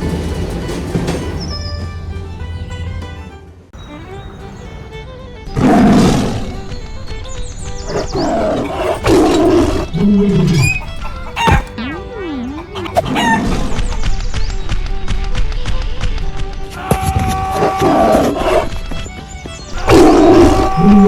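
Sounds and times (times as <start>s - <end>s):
background music: 0.0s - 21.0s
noisy roar-like burst: 16.8s - 18.6s, 19.8s - 21.0s.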